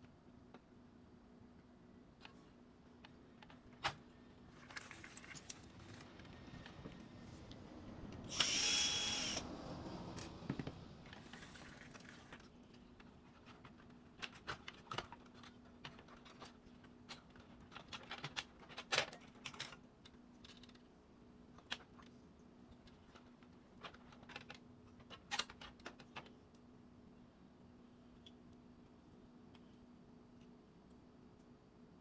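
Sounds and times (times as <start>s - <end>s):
parts and screws clicking: 8.2s - 9.4s
electric screwdriver whine: 8.3s - 9.5s.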